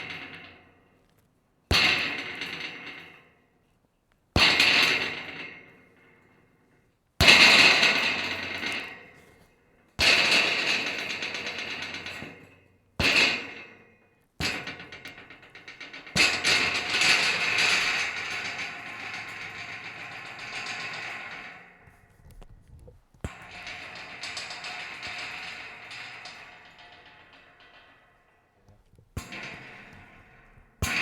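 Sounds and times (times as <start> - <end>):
scrap metal rattling and clattering: 14.5 - 31.0.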